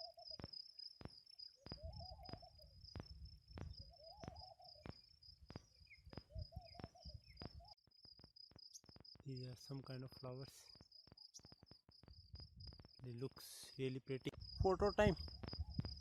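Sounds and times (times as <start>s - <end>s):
bird hooting: 0.0s - 0.3s, 1.7s - 2.8s, 3.8s - 5.0s
insect trilling: 0.0s - 0.9s.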